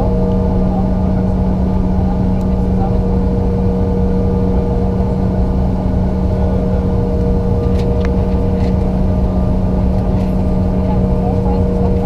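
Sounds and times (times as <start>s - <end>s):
jet engine hum in cabin: 0.0s - 12.0s
low rumble: 0.0s - 12.0s.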